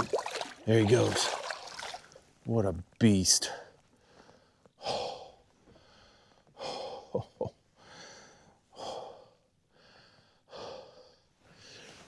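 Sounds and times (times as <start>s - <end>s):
man breathing heavily: 4.0s - 7.2s, 7.8s - 12.0s.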